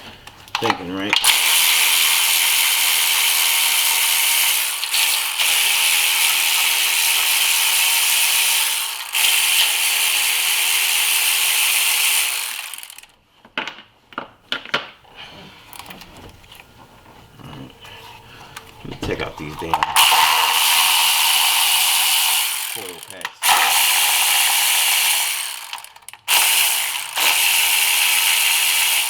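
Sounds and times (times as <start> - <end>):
ratchet wrench clicking: 1.2 - 13.1, 19.8 - 29.0
tools and parts knocking: 13.4 - 15.0, 18.8 - 20.4.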